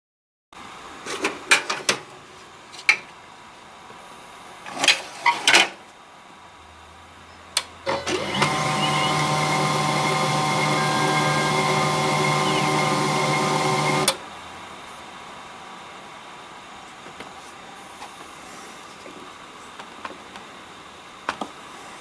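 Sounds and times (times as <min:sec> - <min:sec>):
laser printer whirring: 0:07.8 - 0:14.4
printer squeaking: 0:07.9 - 0:14.2.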